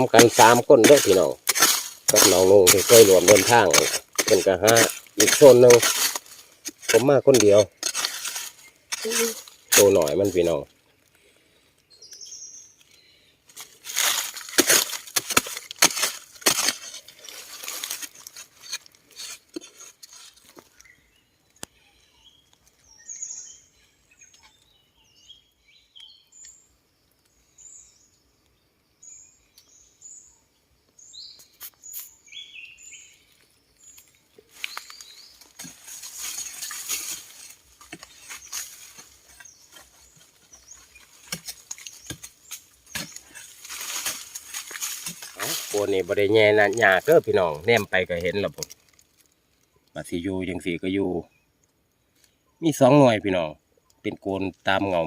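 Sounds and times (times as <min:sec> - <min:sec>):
rustling and scraping: 0:00.0 - 0:11.2, 0:13.5 - 0:21.0, 0:31.4 - 0:32.2, 0:33.2 - 0:49.6
small bird chirping: 0:11.8 - 0:13.8, 0:16.8 - 0:52.8.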